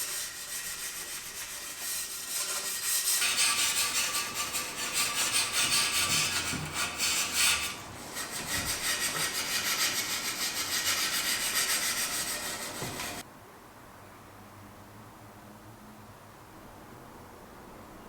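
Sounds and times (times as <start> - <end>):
hand scrubbing metal frame: 0.0 - 13.2.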